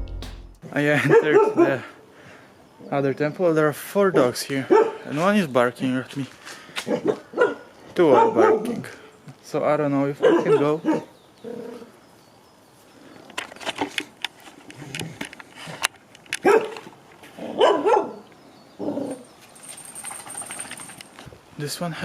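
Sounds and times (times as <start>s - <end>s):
dogs barking: 1.0s - 1.7s, 4.2s - 5.1s, 6.9s - 8.8s, 10.2s - 11.1s, 16.4s - 16.8s, 17.4s - 18.2s.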